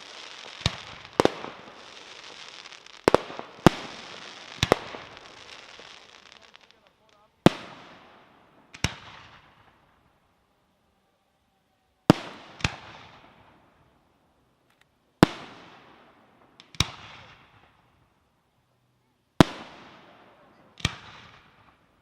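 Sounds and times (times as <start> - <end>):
fireworks bangs with echo: 0.0 - 10.2, 12.1 - 13.8, 15.2 - 18.0, 19.4 - 22.0
small firework cracks: 0.0 - 10.6, 12.0 - 18.4, 19.4 - 22.0.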